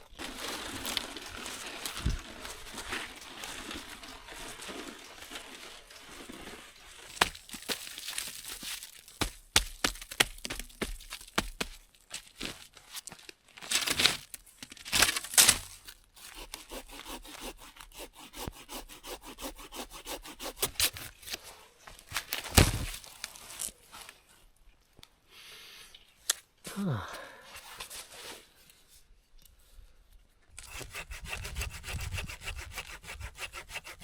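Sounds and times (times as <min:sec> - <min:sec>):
dry branches cracking and snapping: 0:00.1 - 0:06.3, 0:07.0 - 0:16.0, 0:22.0 - 0:23.8
scraping rasping bursts: 0:16.2 - 0:21.1, 0:30.6 - 0:34.0.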